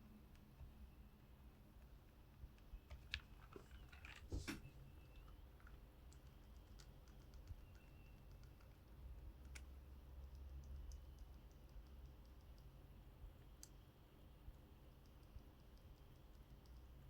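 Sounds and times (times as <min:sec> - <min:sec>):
keyboard keycaps rattling: 0:02.9 - 0:04.6.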